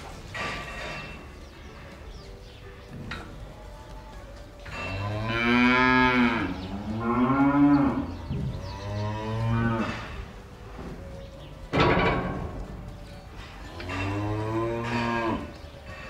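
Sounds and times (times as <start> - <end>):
cattle mooing: 3.8 - 10.4, 13.6 - 16.0.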